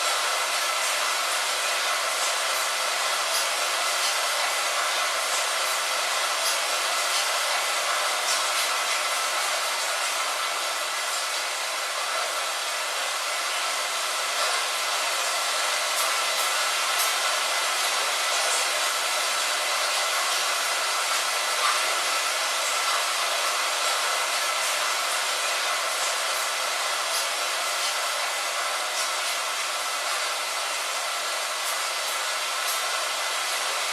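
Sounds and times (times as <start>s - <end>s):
light rain on a window: 0.0s - 13.0s.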